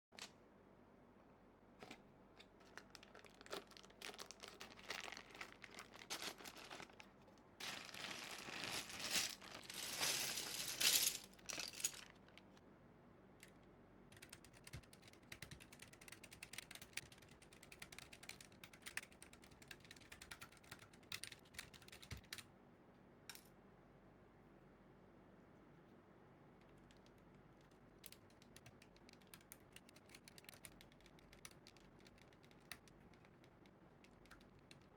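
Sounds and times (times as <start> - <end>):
typing on mechanical keyboard: 14.1 - 22.5, 26.7 - 34.9.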